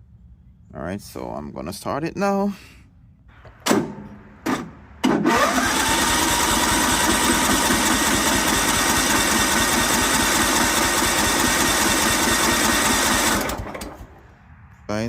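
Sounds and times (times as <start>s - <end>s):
mower engine running: 4.4s - 14.2s
starter cranking: 4.6s - 14.1s.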